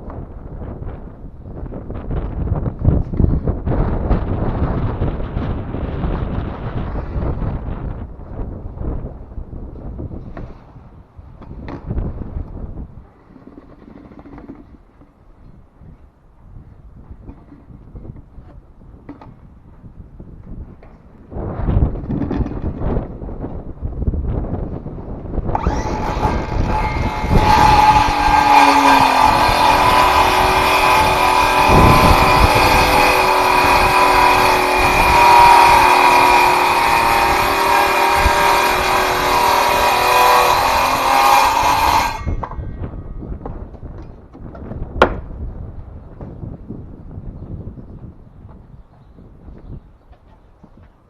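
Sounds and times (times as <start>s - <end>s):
circular saw cutting wood: 13.1s - 15.2s, 25.5s - 42.9s.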